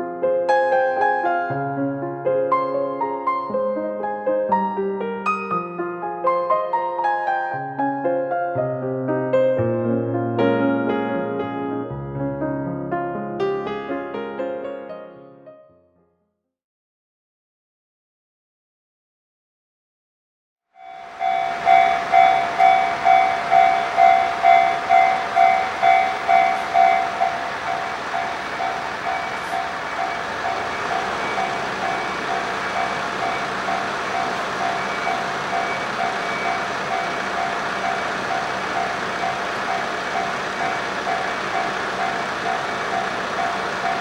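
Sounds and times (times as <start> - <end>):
level crossing bell ringing: 20.8 - 44.0
train passing: 20.8 - 44.0.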